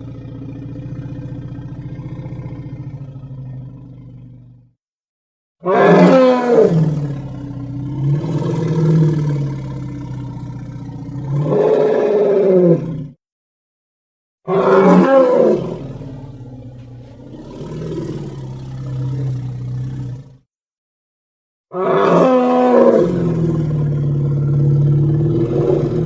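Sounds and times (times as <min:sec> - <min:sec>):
deep monster roar: 0:05.6 - 0:13.2, 0:14.5 - 0:20.4, 0:21.7 - 0:26.0.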